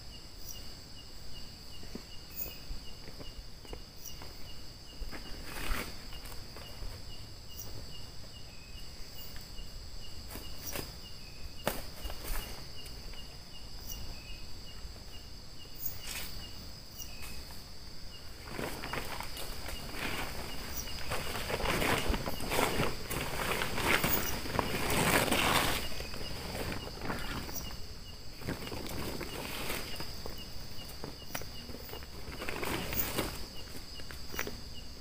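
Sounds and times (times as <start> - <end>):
insect chirping: 0.0 - 35.0
insects trilling: 0.0 - 35.0
rustling noise: 5.0 - 8.3, 11.6 - 13.3, 15.8 - 16.5, 18.3 - 34.7.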